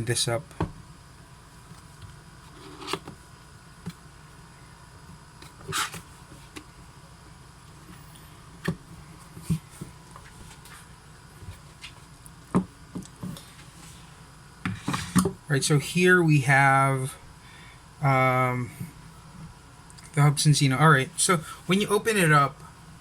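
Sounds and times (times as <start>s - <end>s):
low steady hum: 0.0s - 23.0s.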